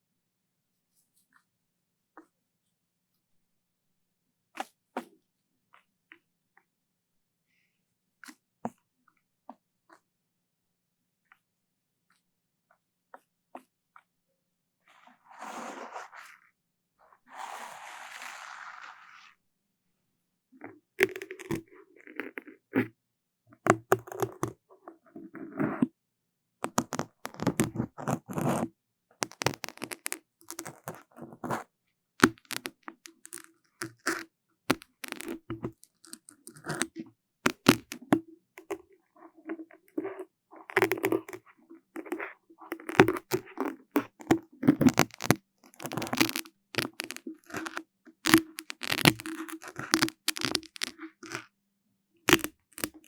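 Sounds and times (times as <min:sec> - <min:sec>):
crackling and scratching at microphone: 0:14.8 - 0:19.4, 0:20.6 - 0:26.0, 0:26.6 - 0:51.6, 0:52.2 - 0:53.0.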